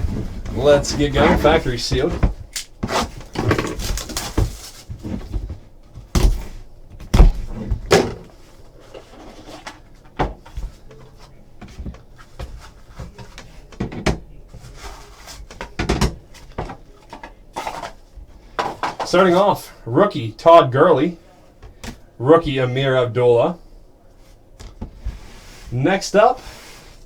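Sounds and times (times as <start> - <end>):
rustling of packaging: 0.0 - 6.7.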